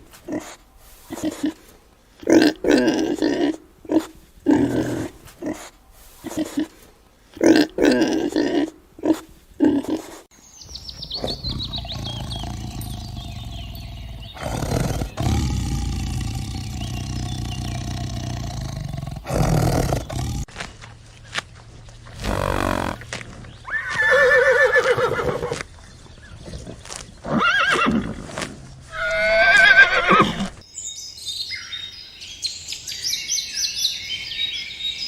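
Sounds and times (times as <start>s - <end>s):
animal grunting calls: 11.1s - 20.5s, 22.2s - 23.9s
animal roar-like calls: 11.2s - 20.5s.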